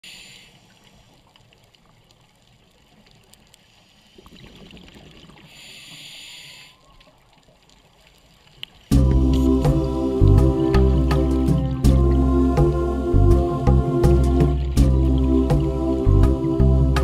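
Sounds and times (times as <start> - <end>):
underwater bubbling: 0.6 - 6.0, 6.7 - 17.0
low underwater rumble: 8.9 - 17.0.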